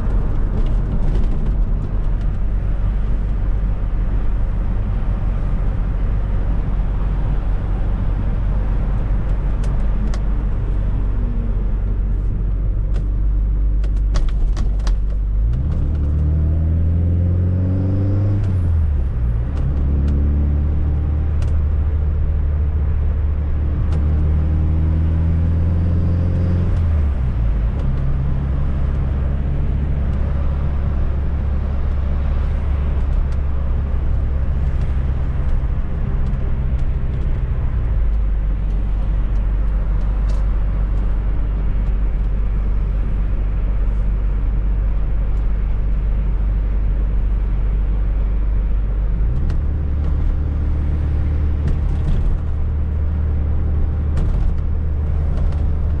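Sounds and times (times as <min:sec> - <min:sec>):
road noise: 0:00.0 - 0:56.0
car engine revving: 0:15.3 - 0:46.4.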